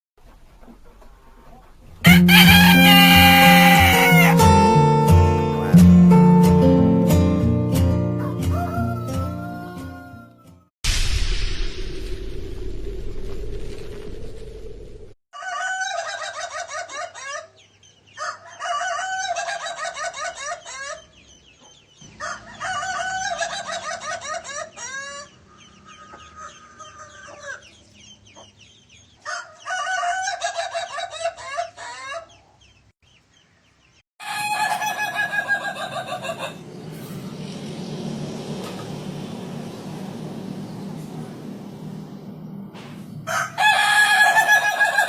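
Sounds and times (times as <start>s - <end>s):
rooster softer call: 2.0s - 4.5s, 8.2s - 10.6s, 34.2s - 37.4s
rooster laughing crow: 2.0s - 4.6s, 8.2s - 10.6s, 15.4s - 17.4s, 22.2s - 25.3s, 34.2s - 36.6s, 43.3s - 45.0s
background music: 2.1s - 10.6s.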